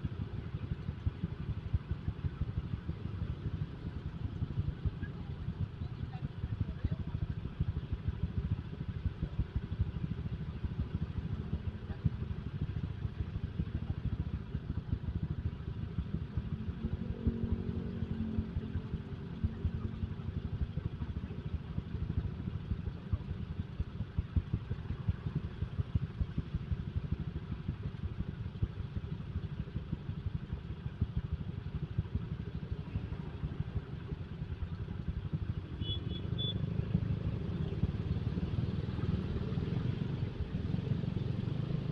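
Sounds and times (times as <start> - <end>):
motorcycle engine rumbling: 10.8 - 25.5.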